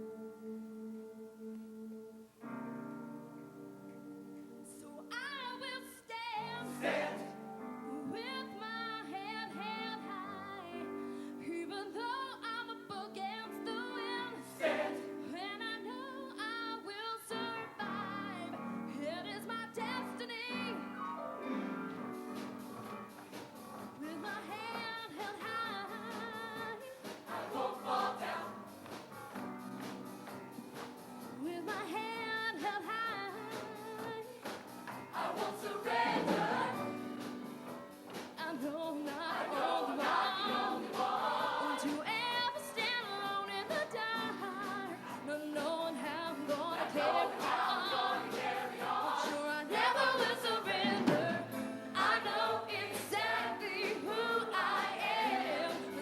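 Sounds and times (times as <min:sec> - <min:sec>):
choir singing in harmony: 0:06.4 - 0:12.9, 0:13.5 - 0:16.5, 0:23.9 - 0:29.2, 0:33.5 - 0:56.0
musical accompaniment: 0:06.4 - 0:56.0.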